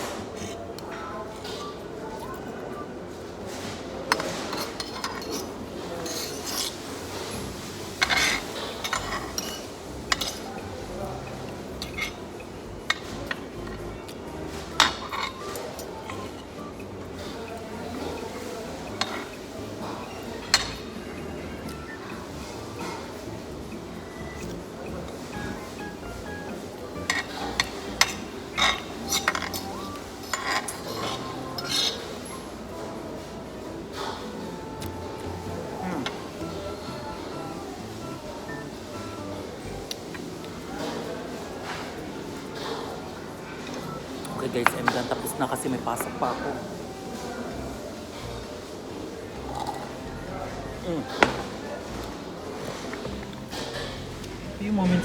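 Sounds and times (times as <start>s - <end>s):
cutlery scraping on a plate: 0.0s - 0.8s, 3.5s - 10.6s, 11.4s - 16.6s, 17.2s - 21.0s, 27.0s - 32.5s, 41.6s - 44.0s, 52.6s - 54.2s
background music: 7.4s - 55.0s.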